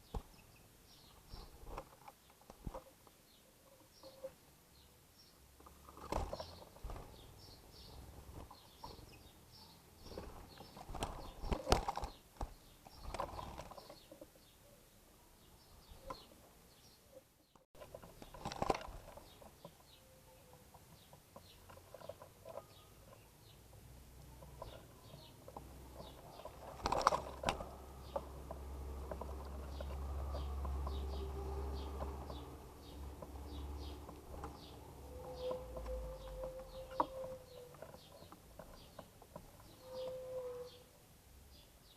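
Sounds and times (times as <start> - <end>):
birds pecking: 0.0 - 4.4, 5.5 - 14.5, 15.6 - 40.7
small birds chirping: 0.0 - 41.9
wings fluttering: 5.7 - 7.4, 10.0 - 14.1, 17.8 - 19.6, 25.6 - 40.0.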